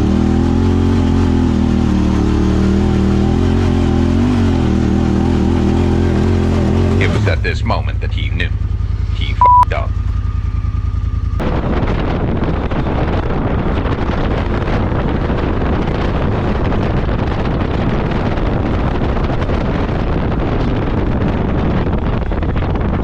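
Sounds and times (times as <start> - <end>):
utility vehicle engine running: 0.0 - 23.0
wind buffeting microphone: 10.8 - 23.0.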